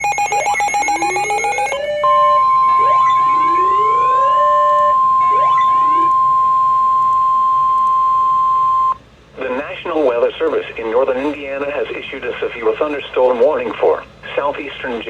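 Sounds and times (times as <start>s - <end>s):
siren sweeping upward: 0.0s - 9.0s
pulsing alarm tone: 0.0s - 9.6s
steady alert tone: 0.0s - 10.2s.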